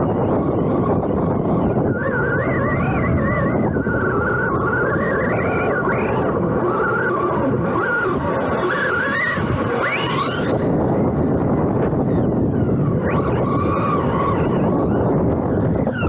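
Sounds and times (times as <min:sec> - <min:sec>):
electric motor whining: 0:00.2 - 0:11.9.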